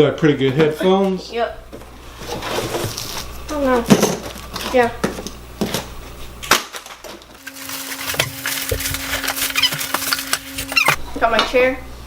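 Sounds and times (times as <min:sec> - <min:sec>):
packaging clicks and crackles: 0:06.7 - 0:11.0.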